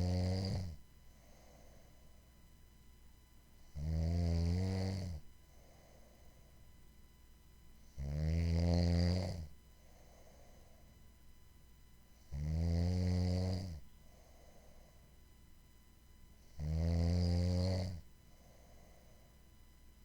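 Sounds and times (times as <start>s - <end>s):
person snoring: 0.0s - 0.8s, 3.7s - 5.2s, 8.0s - 9.5s, 12.3s - 13.8s, 16.5s - 18.0s
soft breath out: 1.0s - 2.3s, 5.5s - 6.7s, 9.8s - 11.0s, 14.0s - 15.2s, 18.2s - 19.5s.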